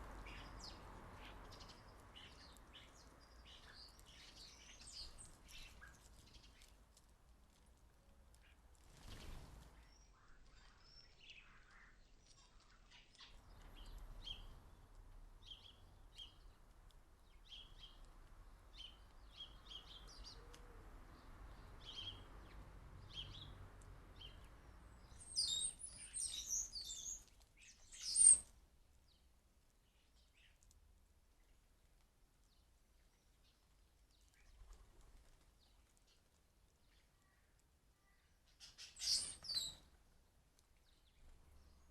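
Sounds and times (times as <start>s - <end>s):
birds twittering: 38.0s - 39.8s.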